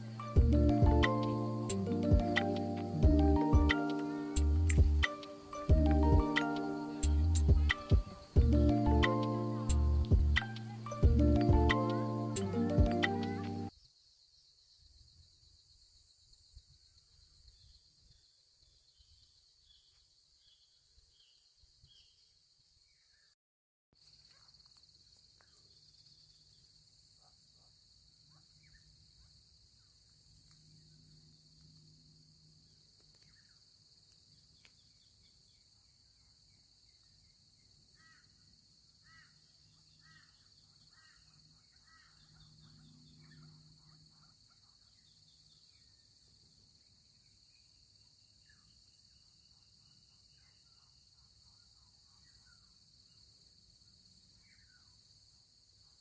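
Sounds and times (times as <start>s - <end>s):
high insect drone: 0.0s - 20.3s, 24.0s - 56.0s
bird calls: 39.0s - 46.0s.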